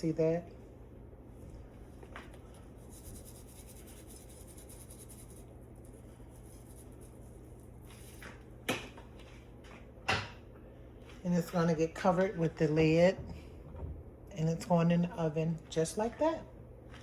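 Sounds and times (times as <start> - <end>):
seasoning rustling from shaker: 2.4 - 8.4.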